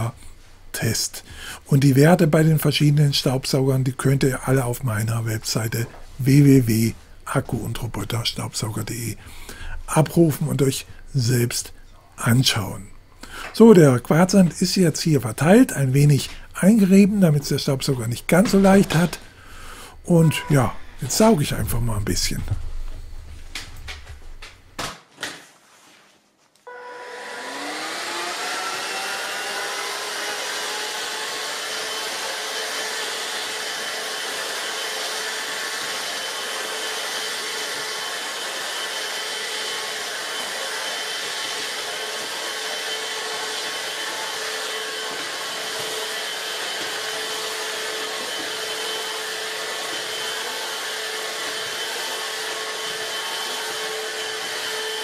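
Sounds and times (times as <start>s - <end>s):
vacuum motor whine: 26.7s - 55.0s.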